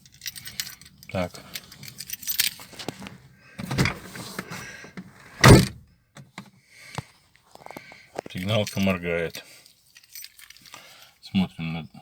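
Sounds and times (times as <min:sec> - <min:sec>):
rustling movement: 0:00.2 - 0:05.8
car door thump: 0:05.4 - 0:05.8.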